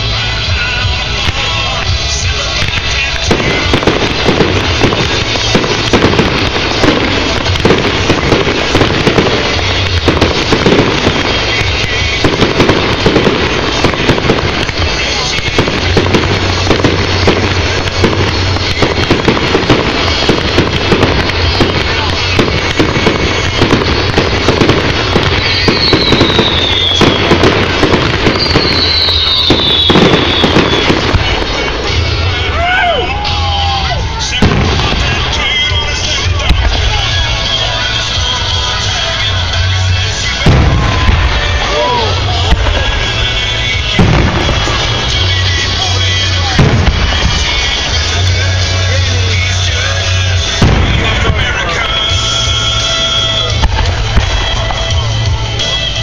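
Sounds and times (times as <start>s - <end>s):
fireworks bangs and crackles: 0.0s - 56.0s
whistling firework shells: 2.4s - 32.5s, 33.2s - 56.0s.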